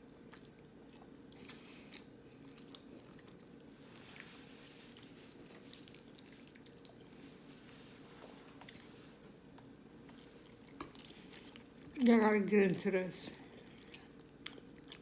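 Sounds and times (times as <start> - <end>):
chewing and mouth sounds: 0.0 - 7.7, 8.5 - 12.1, 13.4 - 15.0.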